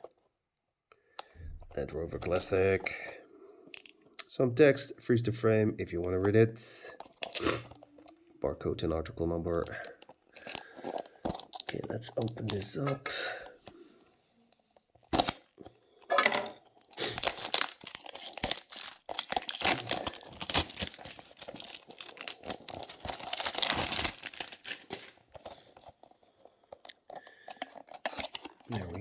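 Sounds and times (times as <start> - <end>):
packaging crinkling and tearing: 7.0 - 8.2, 9.5 - 12.9, 14.9 - 15.8, 16.4 - 29.0.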